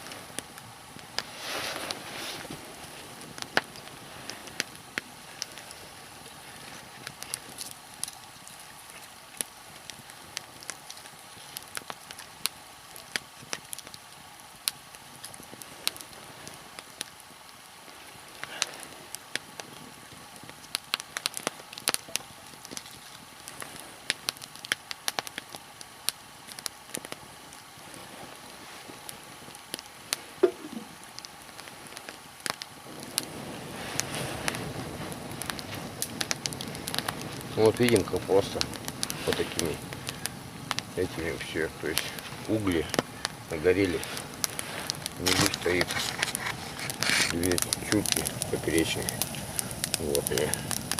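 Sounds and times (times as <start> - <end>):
log fire crackling: 0.0 - 50.9
steady fire hiss: 0.0 - 50.9
sharp pops: 30.4 - 31.3, 41.9 - 50.9.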